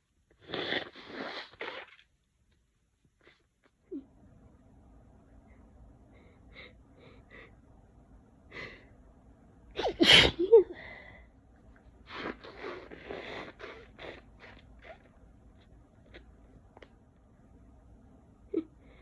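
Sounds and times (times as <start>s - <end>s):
person sneezing: 9.8s - 10.5s.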